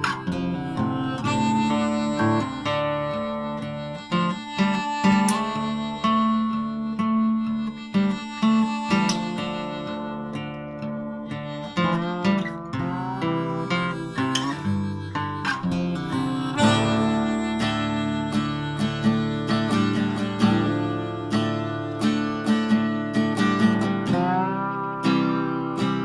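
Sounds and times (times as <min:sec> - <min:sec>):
acoustic guitar strumming: 0:00.0 - 0:26.0
harmonica melody: 0:00.0 - 0:26.0.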